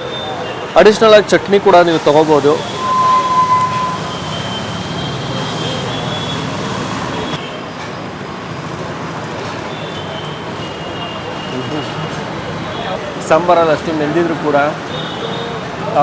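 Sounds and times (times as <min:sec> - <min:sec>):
road traffic: 0:00.0 - 0:16.0
short high beep: 0:02.6 - 0:06.4.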